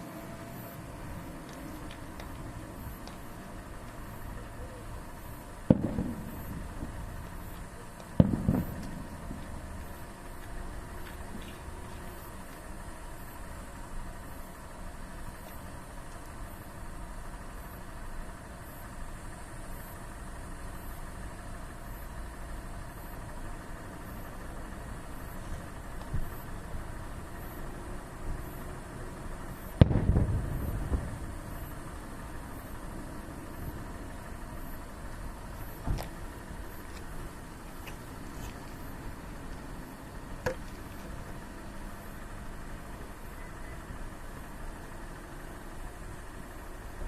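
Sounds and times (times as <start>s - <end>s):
low background rumble: 0.0s - 47.0s
firework bursting with deep boom: 5.2s - 10.2s, 29.5s - 32.0s
faint bang: 29.8s - 31.1s.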